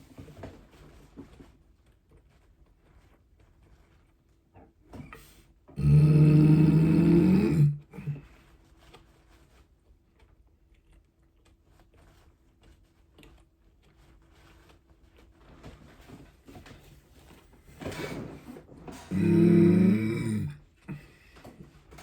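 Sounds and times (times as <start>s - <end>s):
mouth clicks and smacks chewing: 10.1s - 15.3s.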